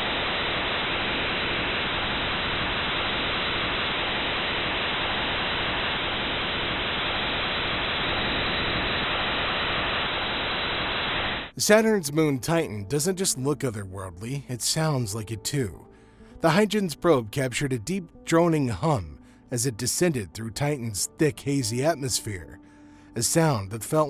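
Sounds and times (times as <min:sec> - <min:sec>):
steady rushing noise: 0:00.0 - 0:11.6.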